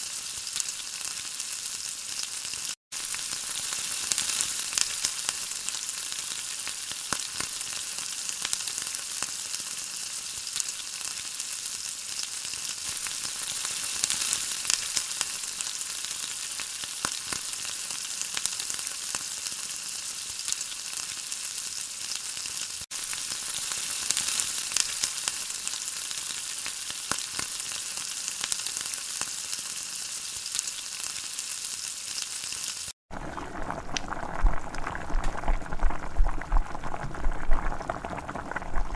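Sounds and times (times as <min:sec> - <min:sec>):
food sizzling in hot oil: 0:00.0 - 0:38.9.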